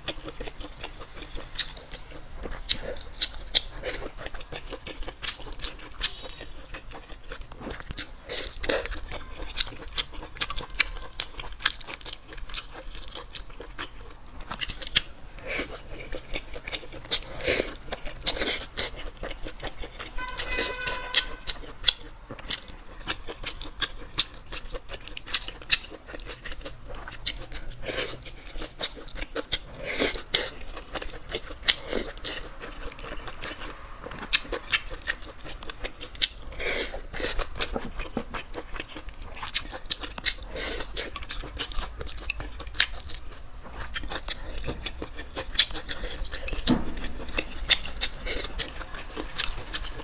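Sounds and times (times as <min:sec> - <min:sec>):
chewing with crunches: 0:00.0 - 0:50.0.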